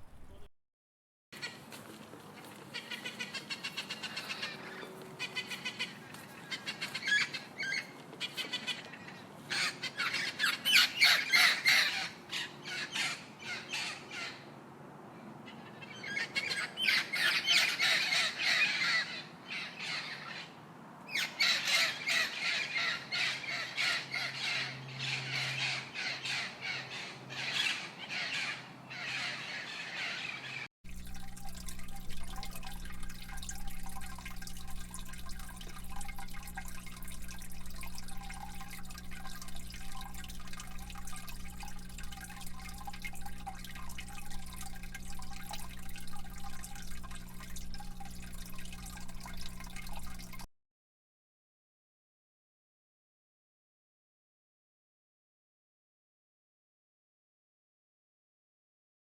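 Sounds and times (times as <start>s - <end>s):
birds calling and squawking: 2.4s - 14.5s, 15.5s - 30.7s.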